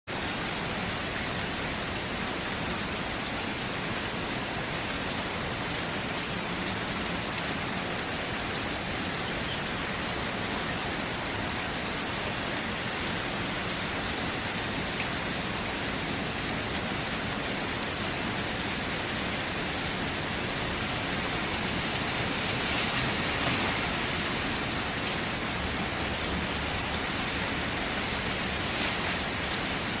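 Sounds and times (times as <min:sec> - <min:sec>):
heavy rain on tent fabric: 0:00.1 - 0:30.0.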